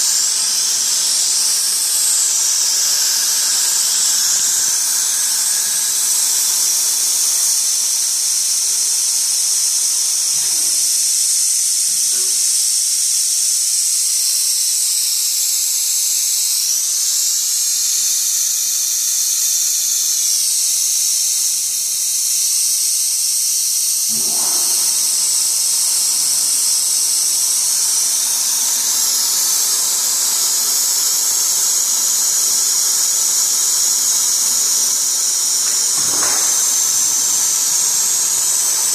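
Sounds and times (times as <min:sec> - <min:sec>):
faint machine tones: 0:00.0 - 0:12.6, 0:24.1 - 0:38.9
mist coolant spraying hiss: 0:00.0 - 0:38.9.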